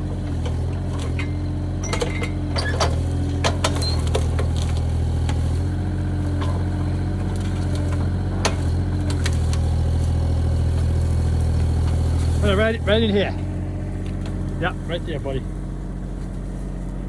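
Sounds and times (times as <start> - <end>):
excavator engine running: 0.0 - 17.0.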